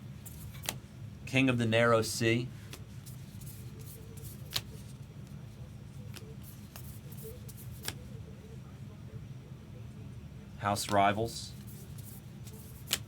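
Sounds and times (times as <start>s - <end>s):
cards flipping and snapping: 0.4s - 0.8s, 4.3s - 4.9s, 6.1s - 8.0s, 12.0s - 13.0s.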